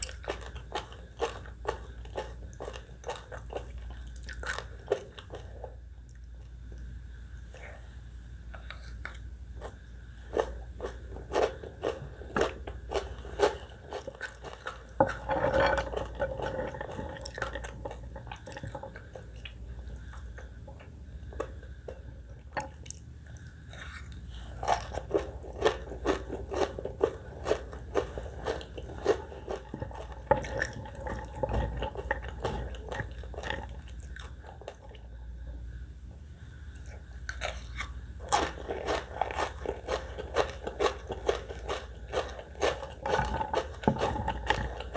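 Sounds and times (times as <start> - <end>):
crunching and chewing food: 0.0 - 7.8, 8.4 - 44.9.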